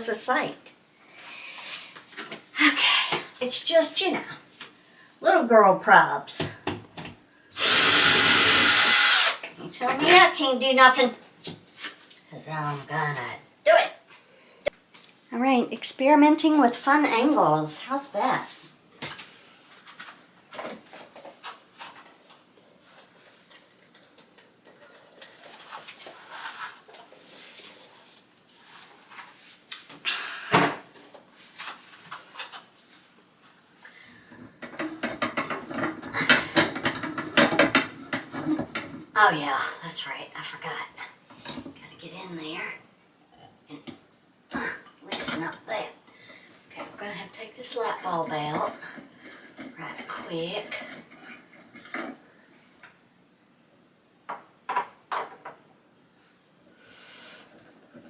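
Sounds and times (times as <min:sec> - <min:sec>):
hard objects knocking and clicking: 0:34.6 - 0:39.0.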